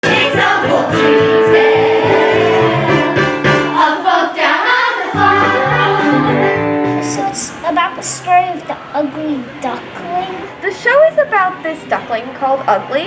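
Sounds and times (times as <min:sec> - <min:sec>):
group singing with accompaniment: 0:00.0 - 0:07.6.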